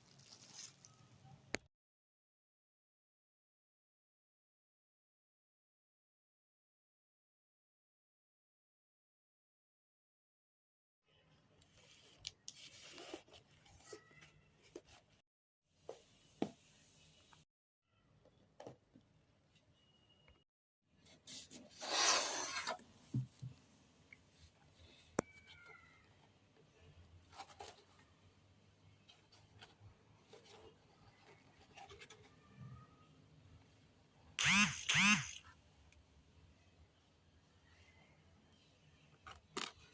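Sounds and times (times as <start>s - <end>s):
faint scratchy rustles: 0.0s - 1.2s.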